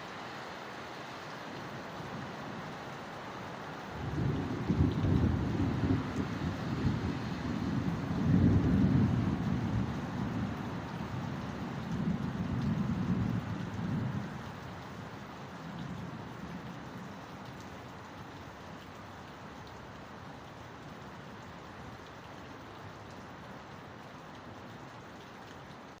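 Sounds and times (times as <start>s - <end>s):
heavy rain falling: 0.0s - 26.0s
thunder rumbling: 4.0s - 11.3s.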